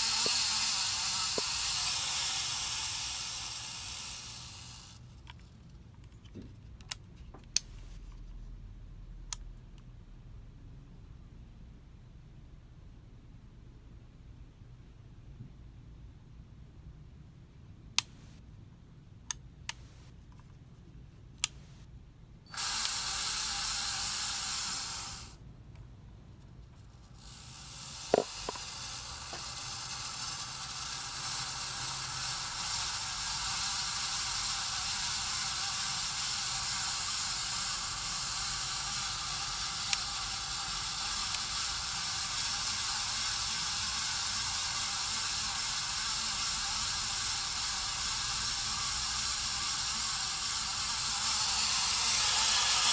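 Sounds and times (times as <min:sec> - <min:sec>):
ceiling fan hissing: 0:00.0 - 0:05.9, 0:19.8 - 0:52.9.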